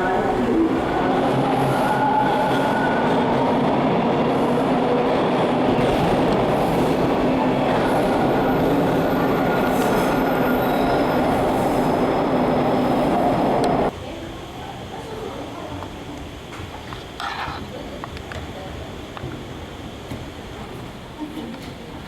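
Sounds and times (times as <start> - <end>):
train wheels rumbling on track: 0.0 - 13.9.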